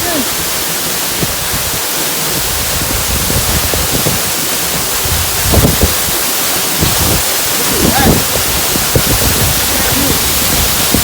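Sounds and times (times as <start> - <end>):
waterfall rushing: 0.0 - 11.0
low thumps: 2.4 - 11.0.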